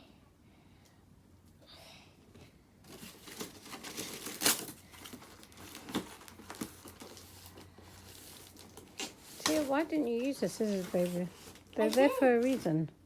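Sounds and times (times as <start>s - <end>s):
packaging tearing and crinkling: 2.9s - 12.7s.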